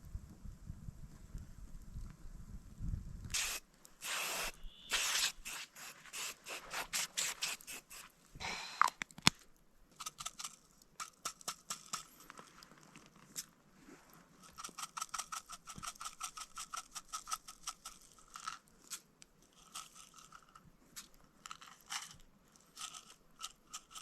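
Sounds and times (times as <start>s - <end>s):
objects rustling and scraping: 3.4s - 10.2s, 11.8s - 14.8s.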